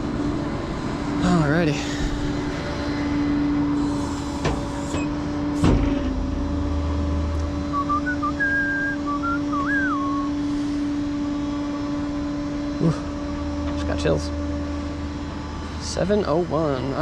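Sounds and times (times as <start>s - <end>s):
street hum: 0.0s - 17.0s
short wavering whistle: 7.6s - 10.4s.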